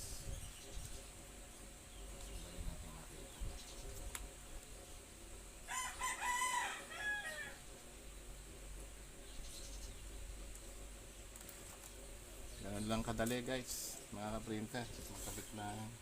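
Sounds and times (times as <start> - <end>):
rooster crowing: 5.6 - 7.6.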